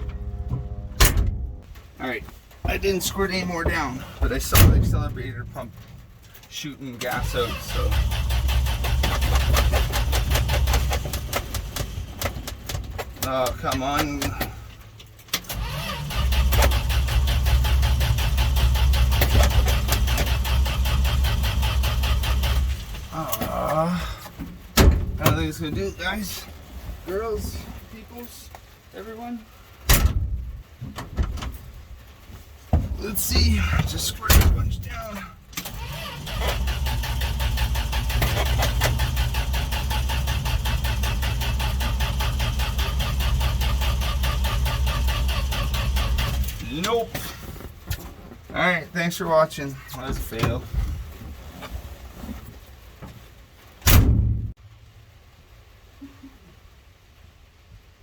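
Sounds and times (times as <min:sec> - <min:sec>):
engine cranking without firing: 0:00.0 - 0:01.9, 0:02.6 - 0:26.4, 0:32.8 - 0:47.8.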